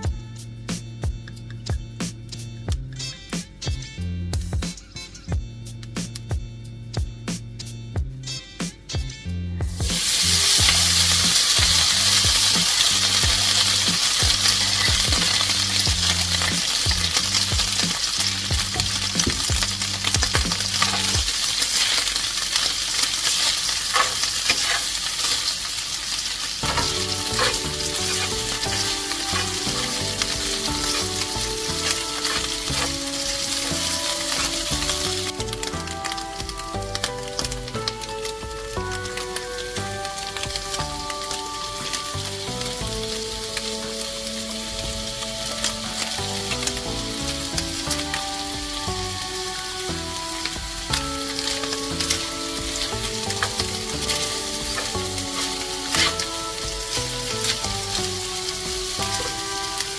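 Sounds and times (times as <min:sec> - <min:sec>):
background music: 0:00.0 - 0:59.9
food sizzling in a pan: 0:09.8 - 0:59.9
utensil stirring clicks: 0:09.9 - 0:37.1.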